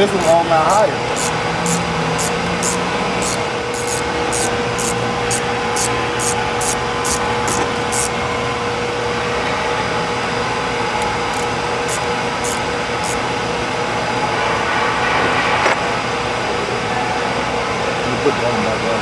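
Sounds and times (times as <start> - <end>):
sharp high ticking: 0.0 - 8.1, 11.0 - 13.3
machine running noise: 0.0 - 18.1.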